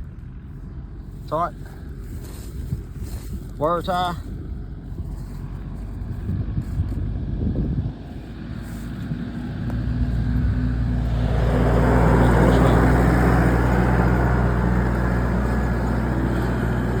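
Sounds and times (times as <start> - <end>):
vehicle engine running: 0.0 - 17.0
tyre and wind rushing: 1.9 - 3.7, 4.3 - 14.4.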